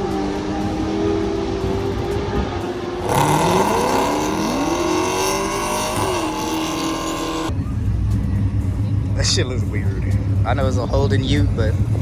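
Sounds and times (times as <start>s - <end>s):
drag racing cars accelerating: 0.0s - 7.6s.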